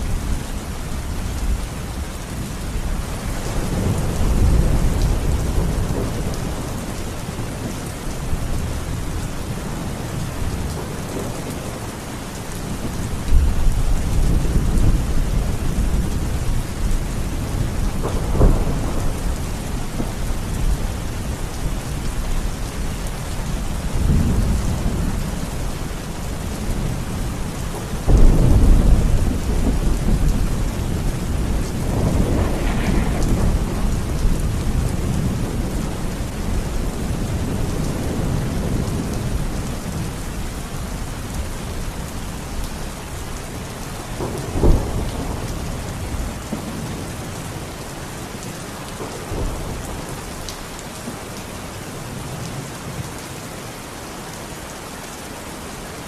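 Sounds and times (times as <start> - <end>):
rolling thunder rumbles: 0.0 - 12.0, 12.6 - 41.8, 43.8 - 47.7
steady rain falling: 0.0 - 56.0
sharp thunder crack: 31.4 - 35.8.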